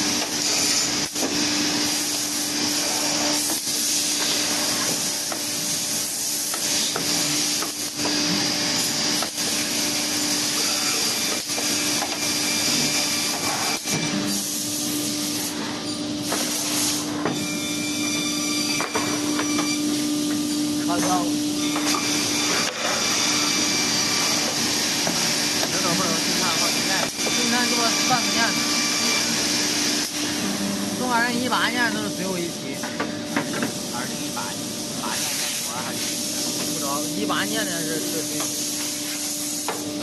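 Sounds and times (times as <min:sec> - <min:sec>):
drilling machine motor hum: 0:18.9 - 0:38.8.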